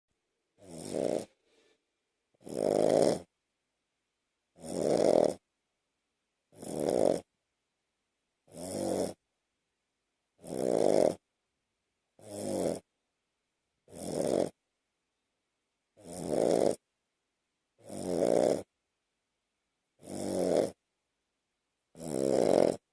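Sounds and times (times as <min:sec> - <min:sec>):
dog snoring: 0:00.6 - 0:01.7, 0:02.4 - 0:03.3, 0:04.6 - 0:05.4, 0:06.5 - 0:07.3, 0:08.5 - 0:09.2, 0:10.4 - 0:11.2, 0:12.2 - 0:12.9, 0:13.9 - 0:14.6, 0:16.0 - 0:16.8, 0:17.8 - 0:18.7, 0:20.0 - 0:20.8, 0:21.9 - 0:22.9.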